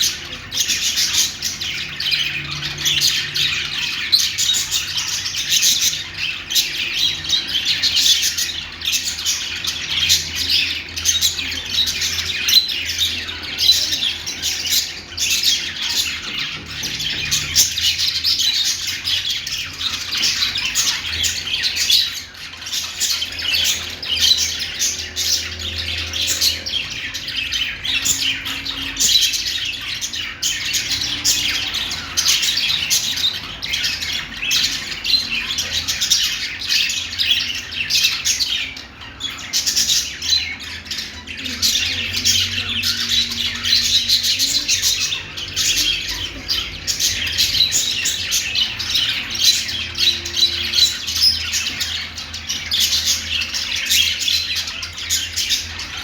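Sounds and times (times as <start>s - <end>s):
budgerigars chirping and warbling: 0.0s - 56.0s.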